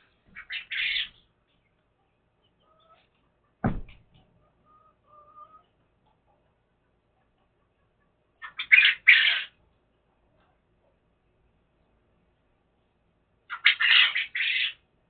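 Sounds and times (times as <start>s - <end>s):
hens soft held calls: 0.0s - 3.6s, 4.4s - 9.6s, 13.5s - 14.8s
hen squawking: 0.3s - 1.2s, 8.4s - 9.6s, 13.5s - 14.8s
sharp knock: 3.6s - 4.1s.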